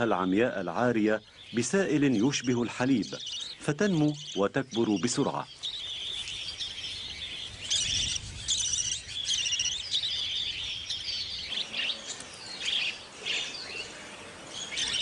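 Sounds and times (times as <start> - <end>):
budgerigars chirping: 0.0 - 15.0.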